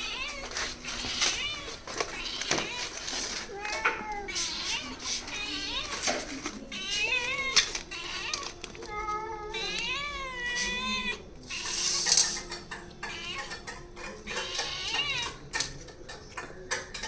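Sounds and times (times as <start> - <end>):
cat meowing: 0.0 - 15.8
dish clattering: 11.6 - 17.0.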